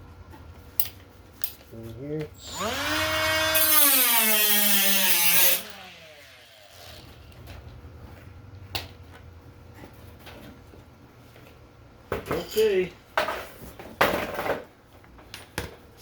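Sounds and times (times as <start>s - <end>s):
rotary power tool spinning down: 2.4s - 7.4s.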